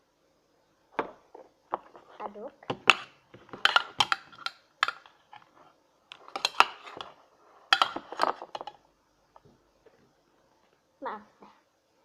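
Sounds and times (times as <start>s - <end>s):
utensil scraping bowl stirring slime: 1.8s - 8.8s.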